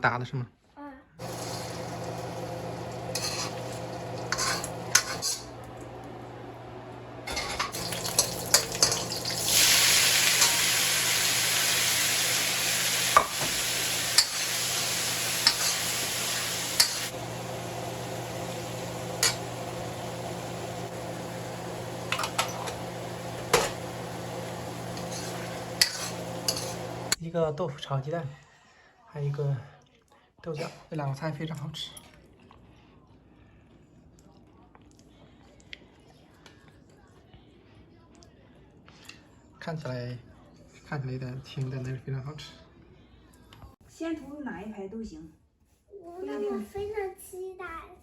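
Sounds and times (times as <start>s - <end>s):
food sizzling in a pan: 1.2s - 6.2s, 7.2s - 27.2s
metal spatula scraping a pan: 3.0s - 5.6s, 7.3s - 11.1s, 13.1s - 17.1s, 24.9s - 27.1s.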